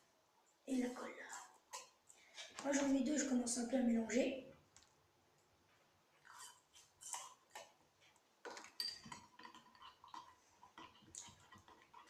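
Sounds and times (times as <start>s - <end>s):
spoon stirring slime in glass: 6.3s - 12.0s.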